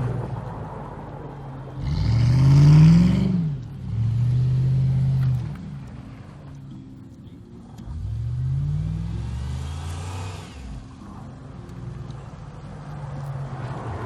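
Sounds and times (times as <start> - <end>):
truck engine revving: 1.7 - 6.0, 7.8 - 14.0.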